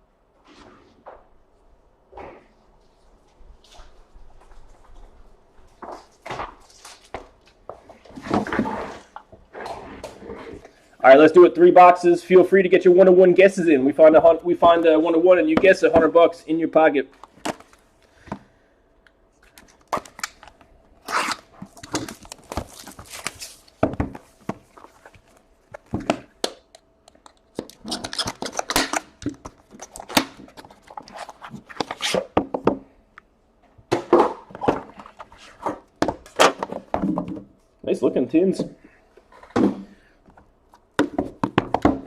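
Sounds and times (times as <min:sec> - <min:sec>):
packaging rustling and tearing: 0:19.4 - 0:23.8, 0:27.5 - 0:32.3.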